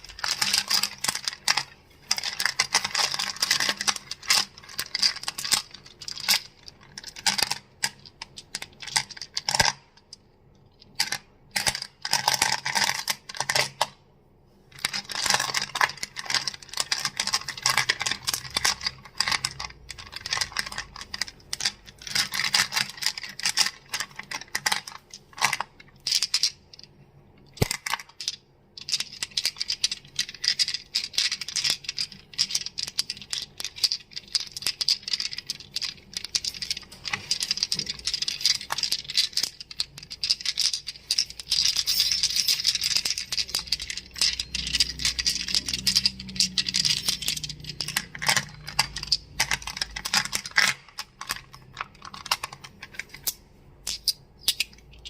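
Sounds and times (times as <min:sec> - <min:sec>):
crystals clicking and clacking: 0:00.0 - 0:13.9, 0:14.7 - 0:55.0.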